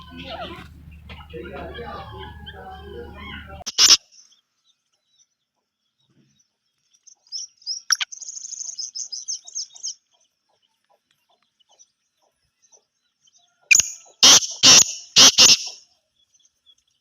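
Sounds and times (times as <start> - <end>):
harsh bird calls: 0.0 - 4.4, 13.5 - 16.0
rapid high bird chirps: 0.0 - 4.5, 7.1 - 10.4, 13.7 - 17.0.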